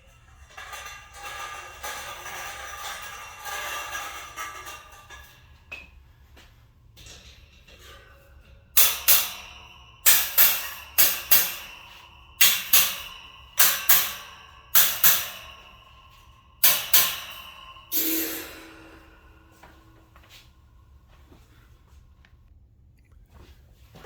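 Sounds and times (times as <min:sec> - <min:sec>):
metal rattling clatter: 0:00.0 - 0:05.6, 0:07.0 - 0:19.6.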